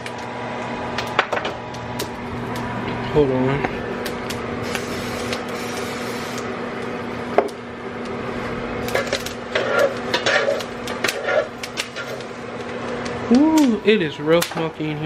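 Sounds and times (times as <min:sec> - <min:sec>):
kitchen exhaust fans humming: 0:00.0 - 0:15.0
peppers crackling in hot skillet: 0:04.0 - 0:07.0, 0:08.8 - 0:14.6.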